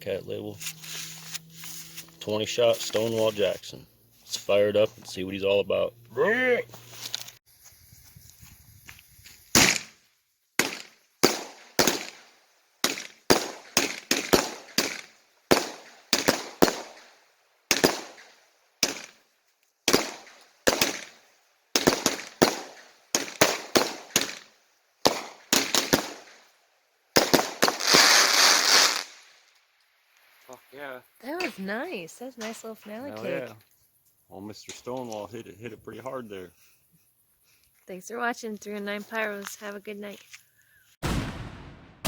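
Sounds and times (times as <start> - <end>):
firework cake shots: 21.8 - 24.4, 27.2 - 29.2.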